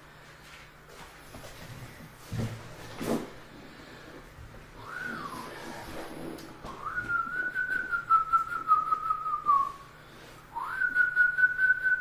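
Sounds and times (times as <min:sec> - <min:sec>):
person whistling long notes: 0:04.8 - 0:05.8, 0:06.7 - 0:12.0.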